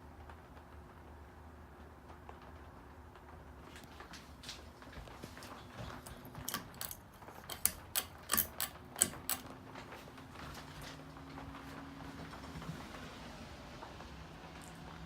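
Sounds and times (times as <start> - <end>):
ceiling fan clicking and rattling: 0.0 - 15.0
ceiling fan motor humming: 0.0 - 15.0.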